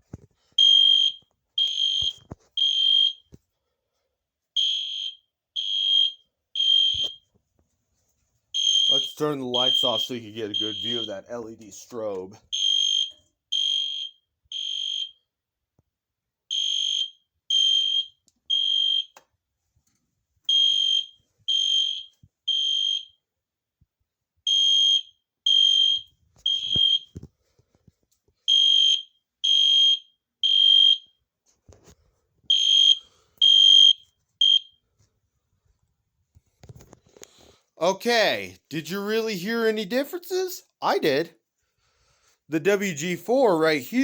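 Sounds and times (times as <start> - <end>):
alarm horn beeping: 8.6 - 12.0.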